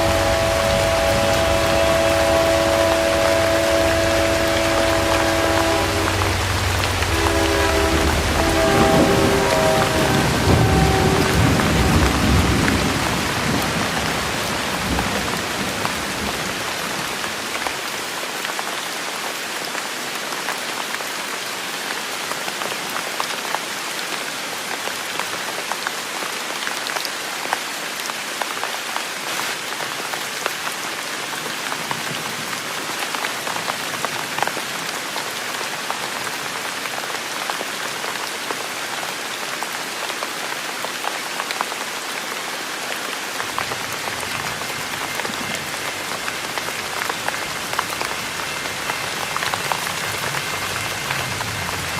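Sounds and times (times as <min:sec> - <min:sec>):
low rumble: 0:00.0 - 0:13.4
heavy rain: 0:00.0 - 0:51.9.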